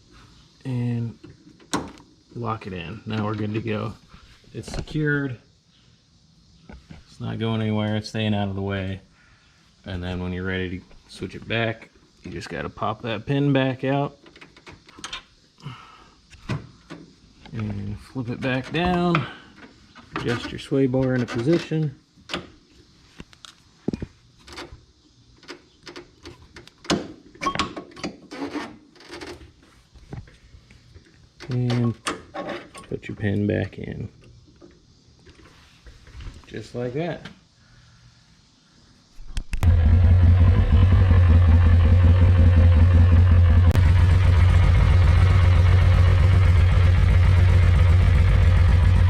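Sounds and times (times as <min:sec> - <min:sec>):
vehicle engine droning: 0:39.6 - 0:49.0.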